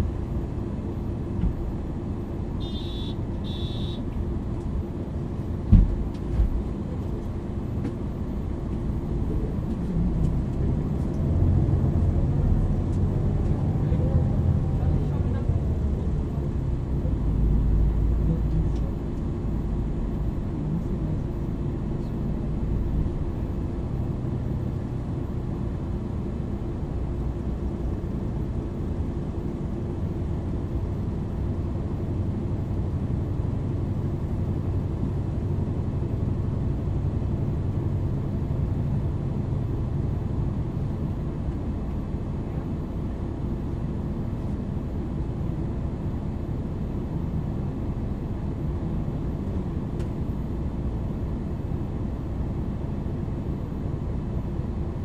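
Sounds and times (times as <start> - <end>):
bus engine rumbling: 0.0 - 55.0.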